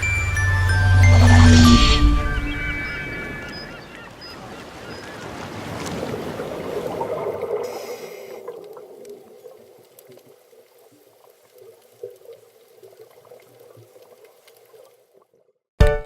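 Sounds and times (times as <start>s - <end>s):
faint underwater crackle: 4.2s - 15.5s.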